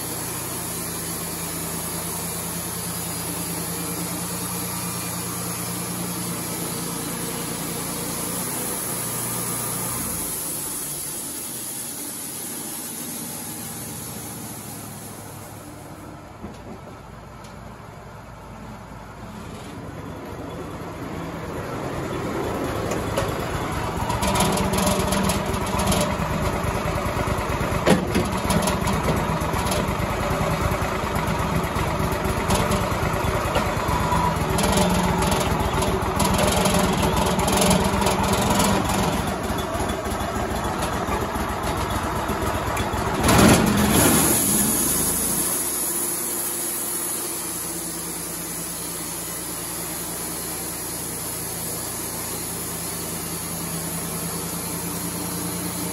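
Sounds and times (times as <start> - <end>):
band sawmill sawing wood: 0.0 - 15.2.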